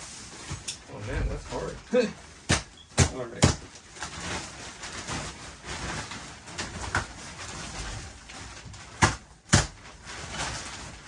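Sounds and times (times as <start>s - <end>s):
mattress shuffling and rustling: 0.0s - 2.1s, 4.0s - 9.0s.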